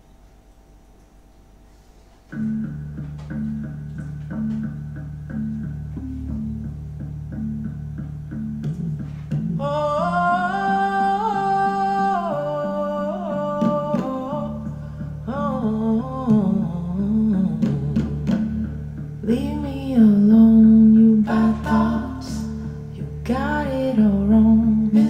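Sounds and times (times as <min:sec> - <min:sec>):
plucked bass line: 0:02.3 - 0:25.0
wordless hummed vocal melody: 0:08.8 - 0:25.0.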